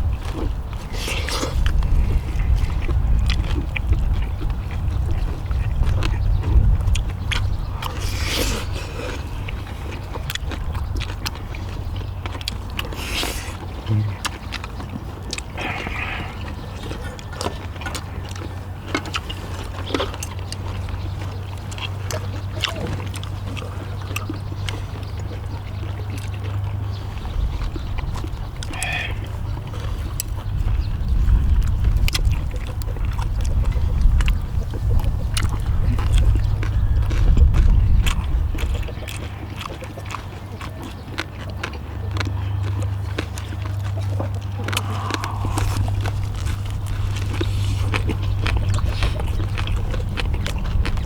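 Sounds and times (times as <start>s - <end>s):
chewing: 0.0s - 51.0s
low hum and rumble: 0.0s - 51.0s
brief vocal sounds: 13.0s - 14.2s.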